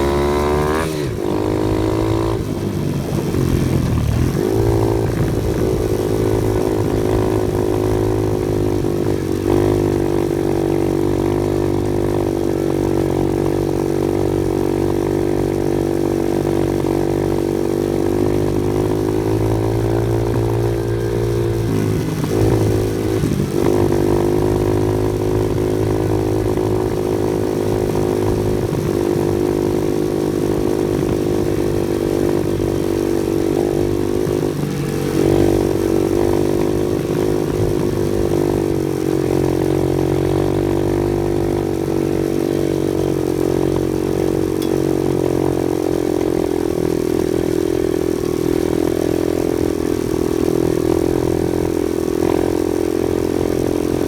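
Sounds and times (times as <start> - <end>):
off-road vehicle engine running: 0.0 - 54.0.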